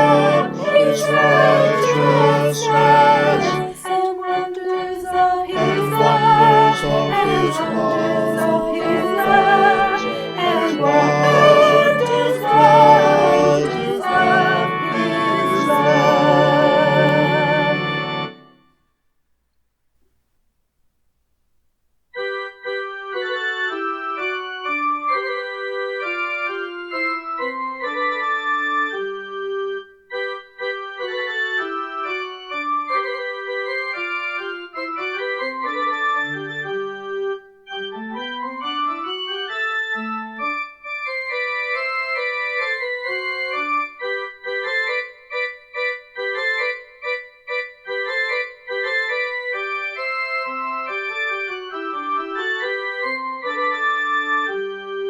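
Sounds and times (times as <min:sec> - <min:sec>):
piano-like keyboard solo: 0:00.0 - 0:18.6, 0:22.2 - 0:55.0.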